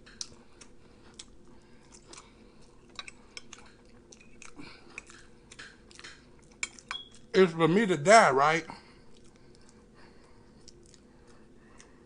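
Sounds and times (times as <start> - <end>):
wet mouth clicks and smacks: 0.0 - 2.3, 2.9 - 7.3
person chewing: 0.0 - 7.3, 8.8 - 12.0.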